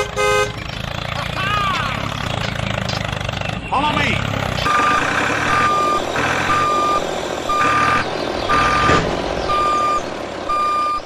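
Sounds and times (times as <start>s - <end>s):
engine rumble: 0.0s - 11.0s
reversing alarm beeping: 4.6s - 11.0s.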